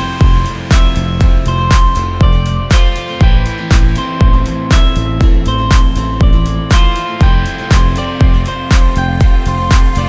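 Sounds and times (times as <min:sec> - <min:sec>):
electronic beat music: 0:00.0 - 0:10.0.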